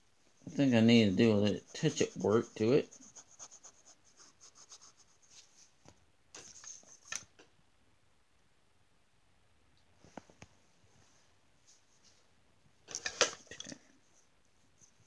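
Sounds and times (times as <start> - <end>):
colouring tool rubbing on paper: 0.4 - 5.4.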